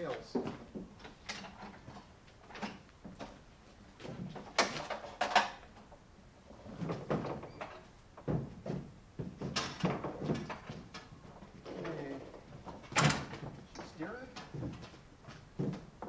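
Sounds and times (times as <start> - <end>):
knocks and clunks: 6.6 - 16.0.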